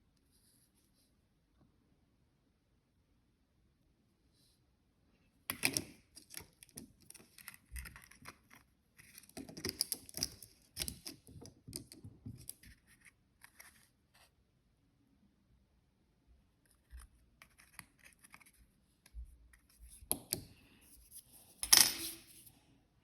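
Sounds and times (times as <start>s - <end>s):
small objects clicking and scraping: 5.5s - 13.8s.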